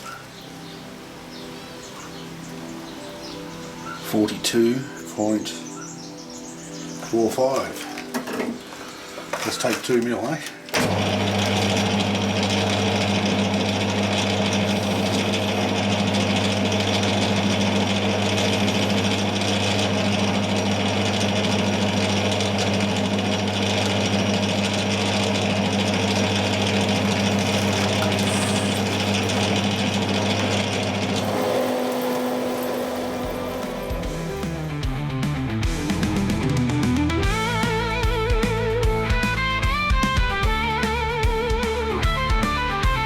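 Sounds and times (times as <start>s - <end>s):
lathe cutting steel: 10.7s - 35.2s
metal lathe motor hum: 10.7s - 35.2s.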